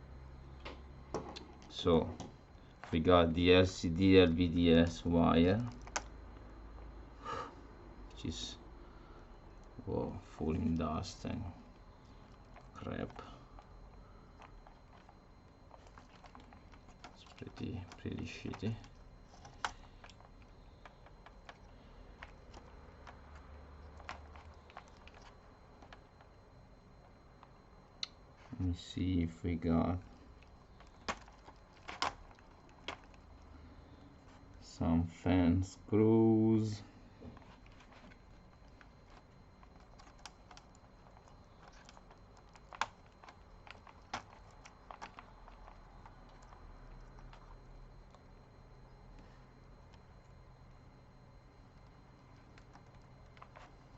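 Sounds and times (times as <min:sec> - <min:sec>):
laptop parts clicking and tapping: 0:37.2 - 0:48.3.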